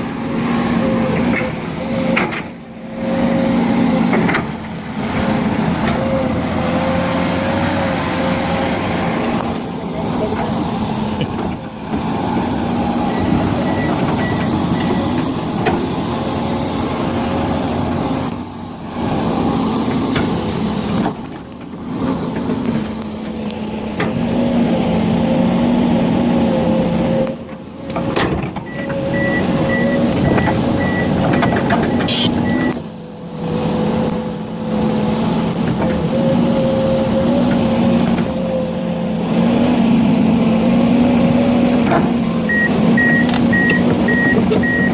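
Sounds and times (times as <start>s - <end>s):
diesel engine running: 0.0s - 44.9s
backup alarm beeping: 42.5s - 44.9s.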